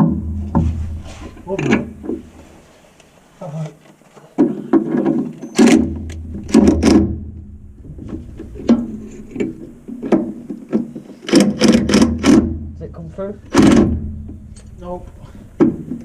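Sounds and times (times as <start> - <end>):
sharp metal bangs: 0.0 - 2.3, 5.6 - 10.5, 11.3 - 16.0.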